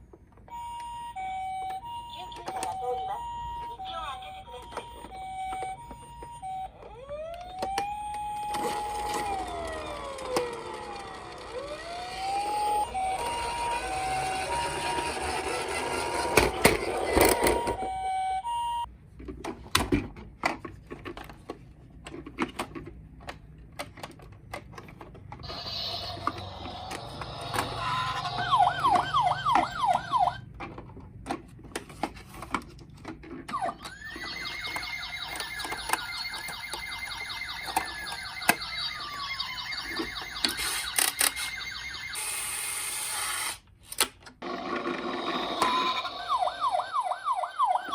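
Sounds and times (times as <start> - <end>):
two-tone siren: 0.5 - 18.9, 25.5 - 30.4, 33.6 - 42.9, 45.3 - 47.9
fast warbling siren: 5.0 - 18.9, 25.5 - 30.4, 33.6 - 42.8, 45.6 - 47.9
rising and falling siren: 5.0 - 18.9, 25.5 - 30.4, 33.6 - 42.8, 45.4 - 47.9.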